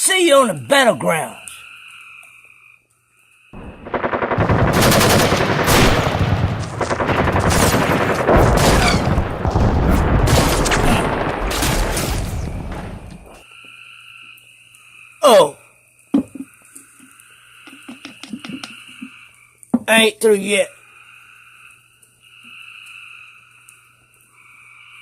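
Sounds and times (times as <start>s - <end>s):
rapid sharp bangs: 3.6s - 13.4s.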